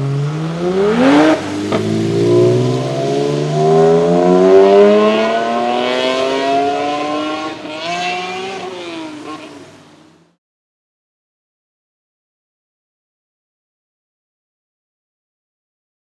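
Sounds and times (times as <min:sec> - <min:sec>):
car engine accelerating hard: 0:00.0 - 0:10.4.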